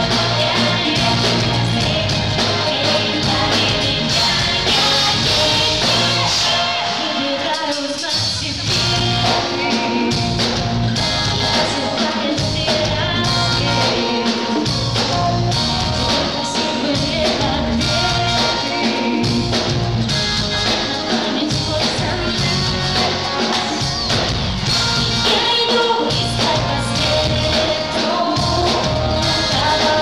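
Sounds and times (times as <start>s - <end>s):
drum beat: 0.0s - 6.5s
woman singing: 0.0s - 19.7s, 20.8s - 24.0s, 25.2s - 30.0s
live pop-rock band: 0.0s - 30.0s.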